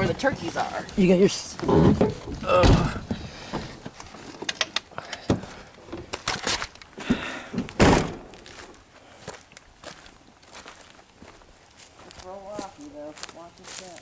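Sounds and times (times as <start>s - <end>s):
vehicle doors thunking shut: 1.6s - 3.8s, 7.1s - 8.3s.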